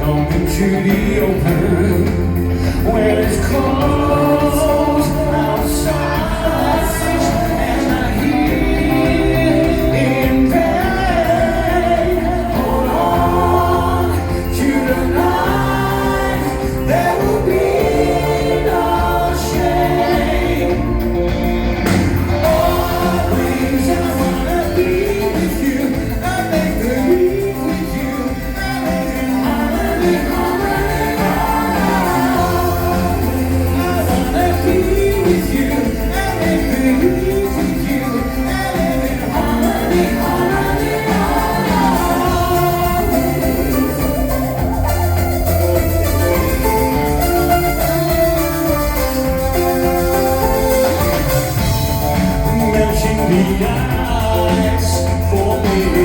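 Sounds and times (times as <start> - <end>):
backing voices singing: 0.0 - 56.0
person singing: 0.0 - 56.0
synthesizers: 0.0 - 56.0.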